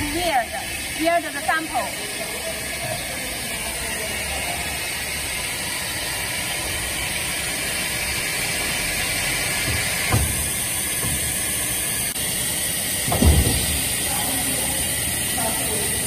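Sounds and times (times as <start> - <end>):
welding machine hiss: 0.0 - 16.0
machine thump: 9.6 - 11.9, 13.0 - 14.0.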